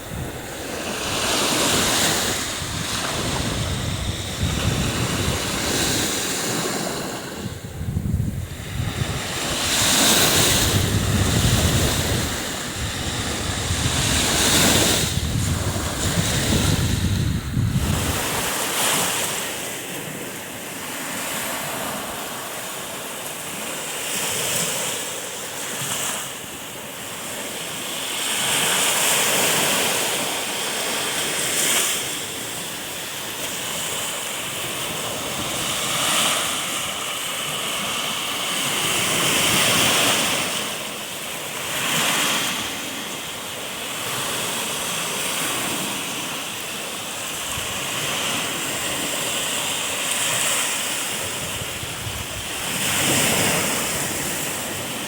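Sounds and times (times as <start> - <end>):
wind on microphone: 0.0 - 20.3, 46.9 - 55.0
surf breaking on shore: 0.0 - 23.0, 23.7 - 55.0.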